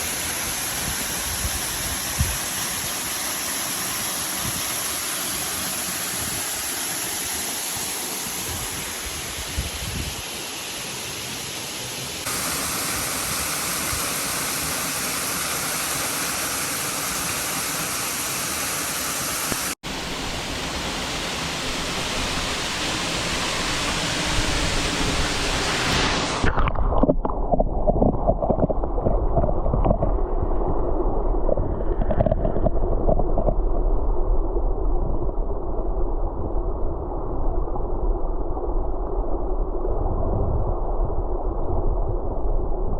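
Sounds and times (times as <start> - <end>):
waterfall rushing: 0.0 - 26.7
low rumble: 26.5 - 42.9.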